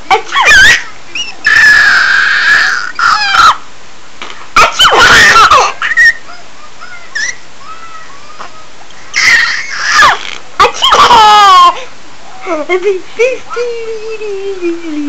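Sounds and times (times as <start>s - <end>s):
baby squealing with laughter: 0.1s - 3.6s, 4.6s - 11.8s.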